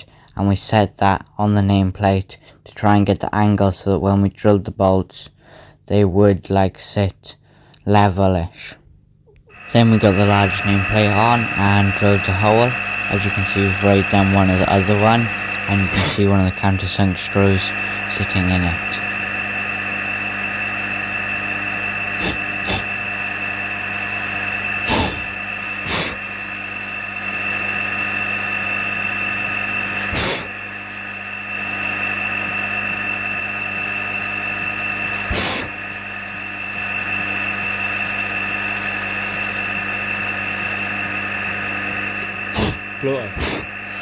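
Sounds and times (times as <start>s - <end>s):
milling machine humming and whining: 9.5s - 44.0s.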